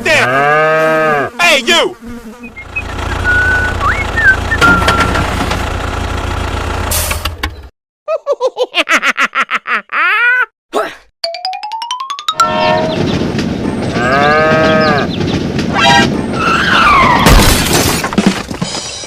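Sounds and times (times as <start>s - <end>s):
vehicle engine running: 2.6s - 7.7s
faint whistle: 3.2s - 5.1s.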